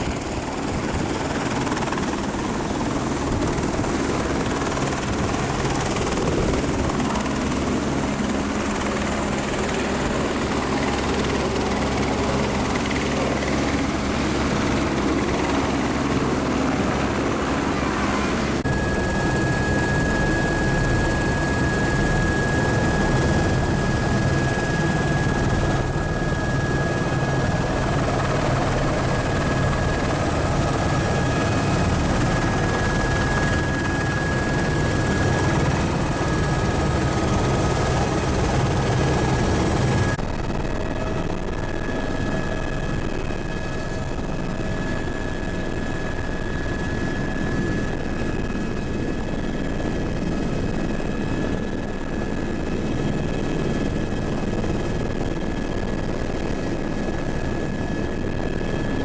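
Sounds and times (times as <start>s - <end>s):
helicopter rotor and turbine: 0.0s - 59.0s
steady high whine: 17.2s - 45.0s.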